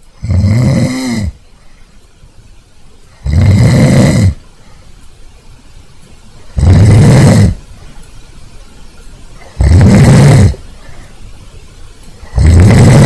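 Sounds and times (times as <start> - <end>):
person snoring loudly: 0.2 - 1.4, 3.2 - 4.4, 6.6 - 7.6, 9.4 - 10.6, 12.2 - 13.0.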